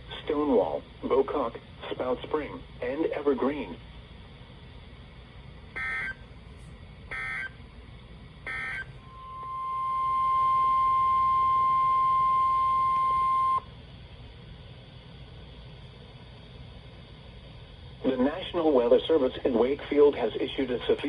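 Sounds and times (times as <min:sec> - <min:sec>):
steady warning alarm tone: 0:05.8 - 0:06.2, 0:07.1 - 0:07.6, 0:08.5 - 0:13.7.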